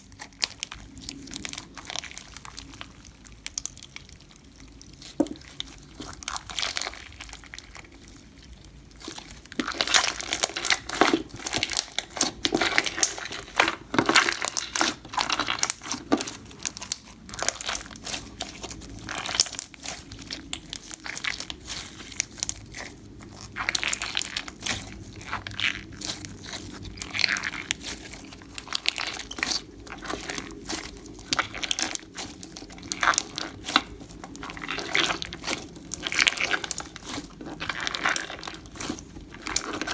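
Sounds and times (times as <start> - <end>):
slime squished by hand: 0.0 - 39.9.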